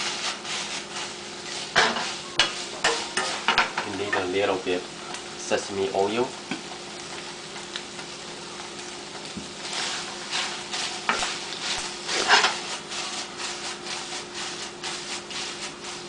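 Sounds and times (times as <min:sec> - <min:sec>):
spatula scraping a pan: 0:00.0 - 0:04.1, 0:09.2 - 0:16.0
food sizzling in a frying pan: 0:00.0 - 0:16.0.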